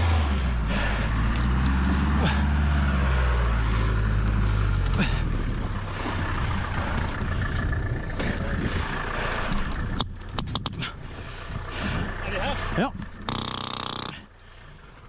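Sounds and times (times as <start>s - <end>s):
vehicle engine running: 0.0s - 15.0s
vehicle rattle and rumble: 0.0s - 15.0s
sharp clicks: 9.5s - 11.1s, 13.0s - 14.3s.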